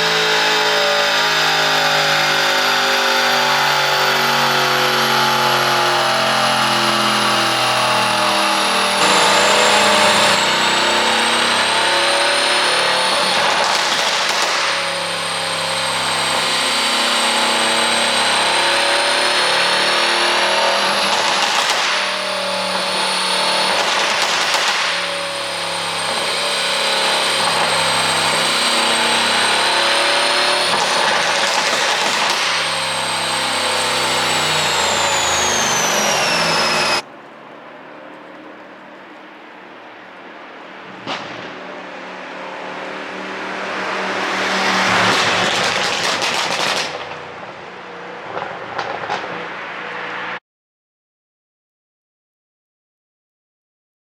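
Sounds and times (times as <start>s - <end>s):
short noisy engine bursts: 0.0s - 37.2s
thin high whine: 0.0s - 45.7s
car engine running loudly: 0.0s - 50.4s.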